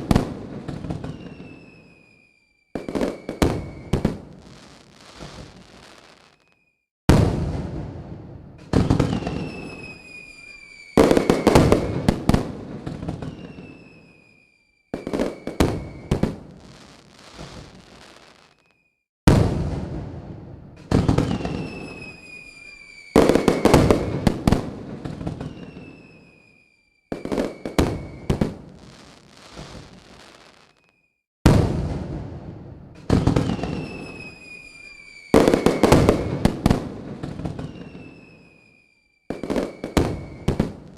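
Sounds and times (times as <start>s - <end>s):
firework crackling: 0.0s - 6.6s, 8.6s - 18.8s, 20.8s - 31.0s, 33.0s - 40.9s
whistling rockets: 0.0s - 8.0s, 8.6s - 20.2s, 20.8s - 32.3s, 33.0s - 40.9s
firework bangs: 0.0s - 18.7s, 19.3s - 40.9s.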